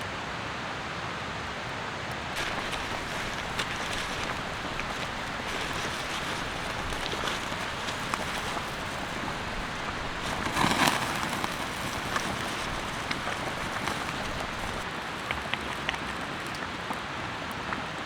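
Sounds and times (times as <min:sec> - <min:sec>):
single raindrops ticking: 0:02.4 - 0:16.9
steady rain: 0:02.4 - 0:18.0.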